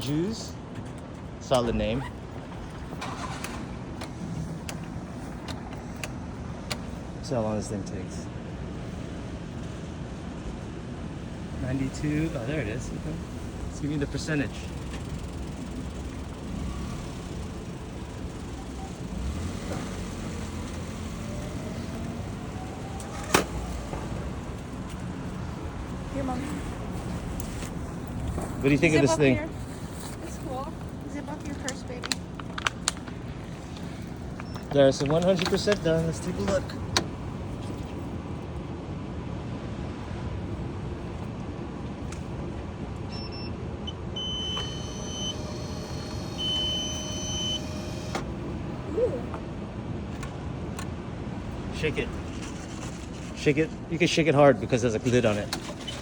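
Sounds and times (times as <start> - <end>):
city street rumble: 0.0 - 56.0
electronic beep: 43.1 - 48.2
faint rising whine: 43.2 - 49.4.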